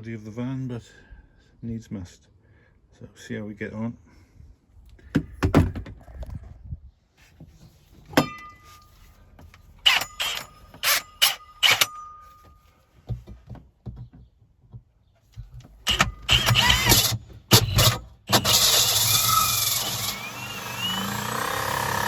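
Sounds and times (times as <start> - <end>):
metallic clank ringing: 8.2 - 8.9, 9.9 - 12.6.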